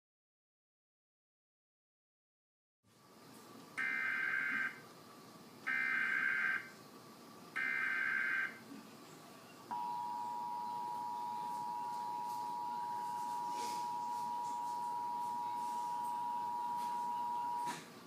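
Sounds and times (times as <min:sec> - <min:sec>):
two-tone attention signal: 0:03.8 - 0:04.8, 0:07.6 - 0:08.6, 0:09.7 - 0:17.8.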